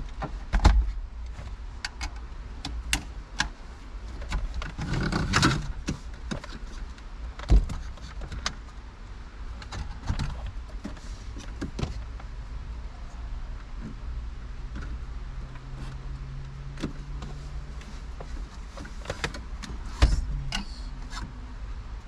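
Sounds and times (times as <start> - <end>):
scraping rustle: 17.0 - 21.4.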